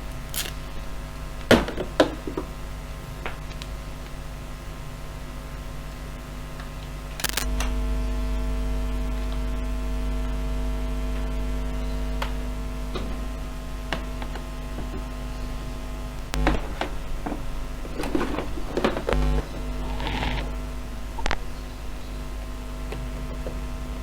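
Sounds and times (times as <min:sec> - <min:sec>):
laptop electrical hum: 0:00.0 - 0:24.0.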